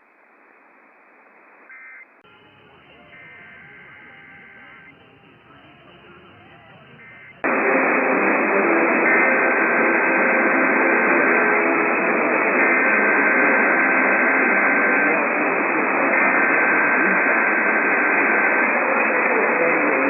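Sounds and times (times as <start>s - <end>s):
radio static hissing: 1.4s - 20.0s
faint data tones: 1.7s - 7.5s.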